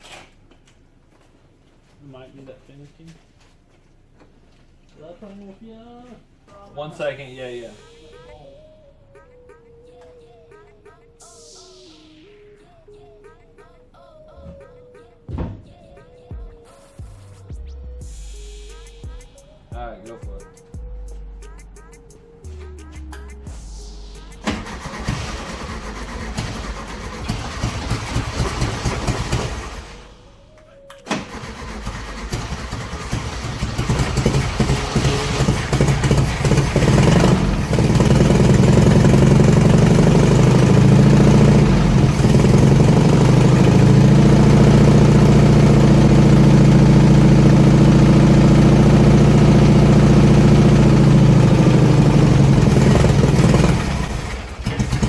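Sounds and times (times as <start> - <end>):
car engine cranking and sputtering: 24.4 - 30.2, 31.1 - 55.0
car engine running: 24.4 - 30.2, 31.1 - 55.0.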